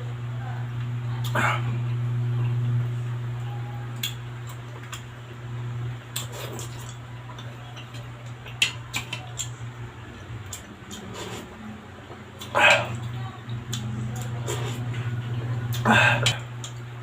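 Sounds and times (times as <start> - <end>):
steady low hum: 0.0 - 17.0
cutlery clicking on a plate: 7.8 - 9.5.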